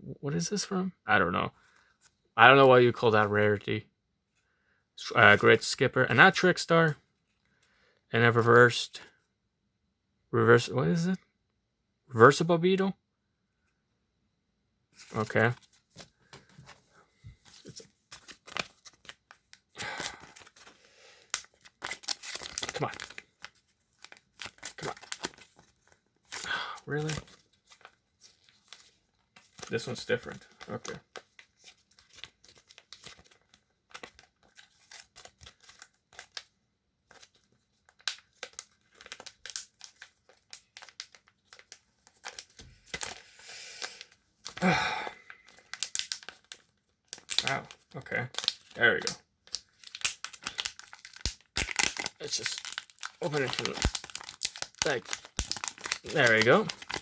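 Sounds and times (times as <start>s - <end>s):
wrapper crinkling: 17.4s - 36.5s, 37.1s - 57.0s
foil wrapper tearing: 19.8s - 25.6s, 45.3s - 57.0s.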